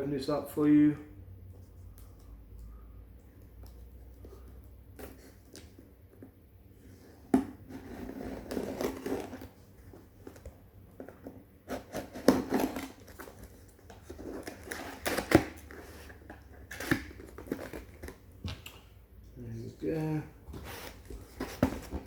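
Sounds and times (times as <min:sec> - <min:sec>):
scraping and crinkling: 0:06.8 - 0:18.2, 0:20.5 - 0:22.0.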